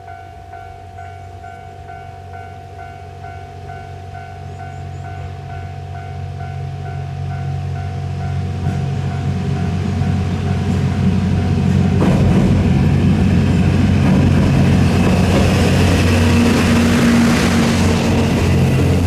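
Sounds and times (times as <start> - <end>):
diesel train engines humming: 0.0 - 19.0
train wheels on rails: 6.4 - 19.0.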